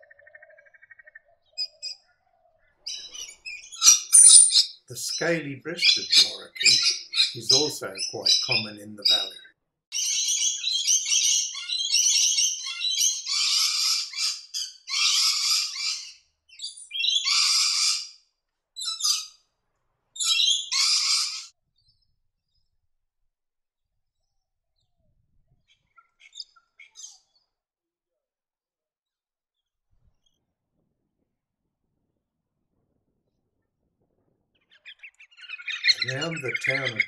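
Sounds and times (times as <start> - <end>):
lorikeets screeching: 2.9 - 9.4, 10.0 - 18.2, 18.8 - 19.4, 20.2 - 21.5, 34.8 - 37.0.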